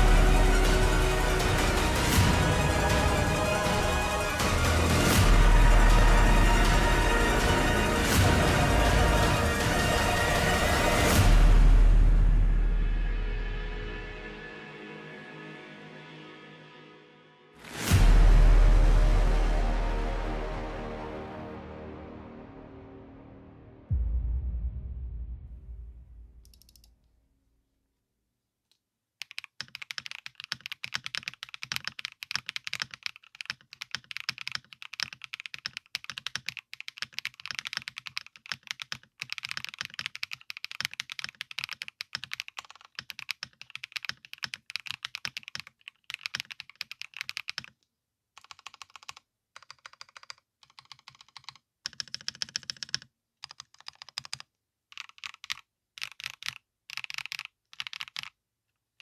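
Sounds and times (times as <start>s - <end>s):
mechanical keyboard typing: 29.2s - 47.8s, 48.4s - 58.4s.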